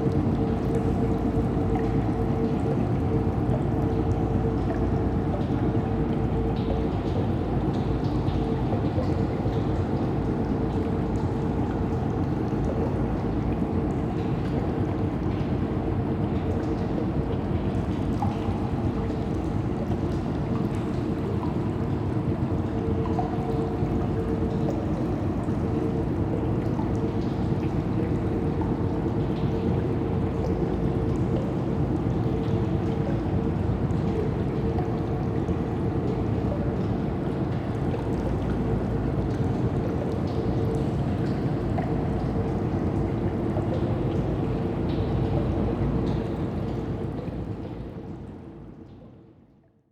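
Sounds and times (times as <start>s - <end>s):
constant hum: 0.0s - 48.2s
faint ticks and drips: 0.0s - 49.9s.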